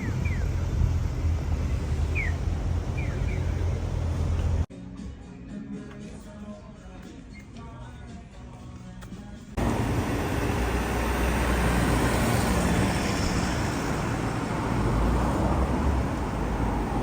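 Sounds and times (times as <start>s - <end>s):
moving vehicle rumble: 0.0s - 4.7s, 9.6s - 17.0s.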